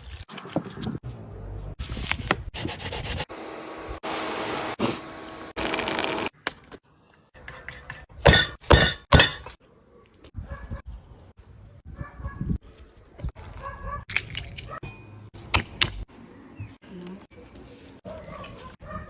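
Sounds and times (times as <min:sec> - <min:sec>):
dishes and utensils clinking: 0:07.4 - 0:09.6.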